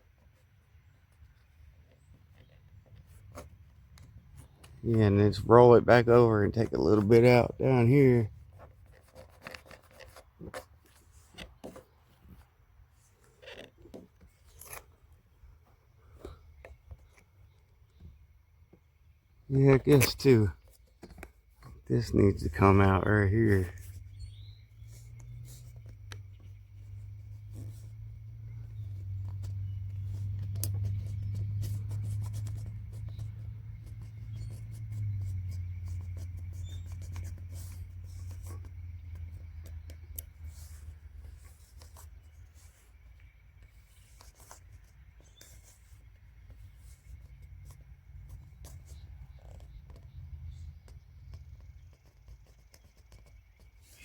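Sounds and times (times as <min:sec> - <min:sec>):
faint scrapes and taps: 0:08.6 - 0:15.0, 0:19.8 - 0:54.0.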